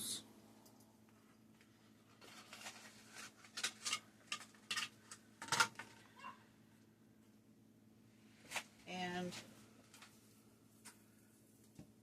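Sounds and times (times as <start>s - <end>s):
package crinkling: 2.2s - 5.8s.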